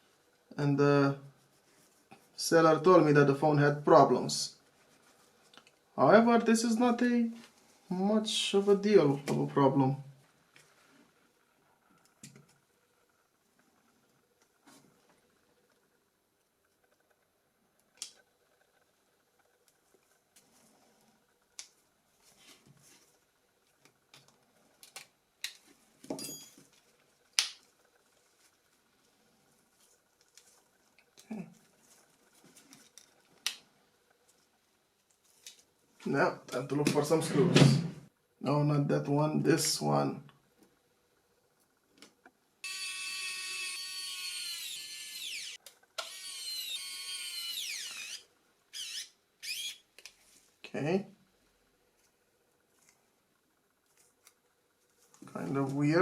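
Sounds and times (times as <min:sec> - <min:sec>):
electric screwdriver motor whine: 0:42.6 - 0:49.8.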